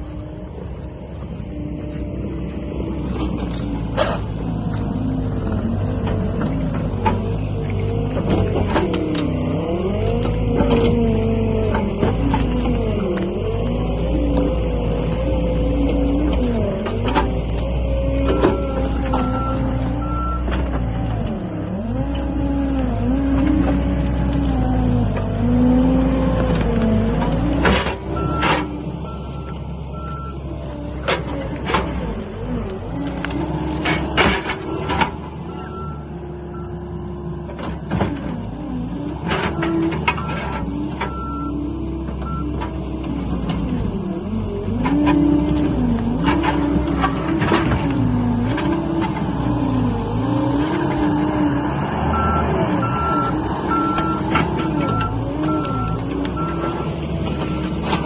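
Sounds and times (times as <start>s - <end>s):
diesel engine working under load: 0.0s - 58.0s
clanks: 30.9s - 35.3s
backup alarm beeps: 42.2s - 42.5s.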